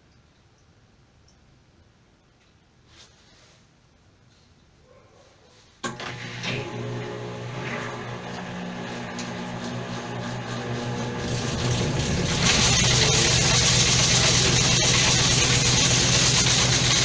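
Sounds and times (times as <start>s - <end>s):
washing machine drum spinning noise: 5.9s - 17.0s
washing machine motor hum: 5.9s - 17.0s.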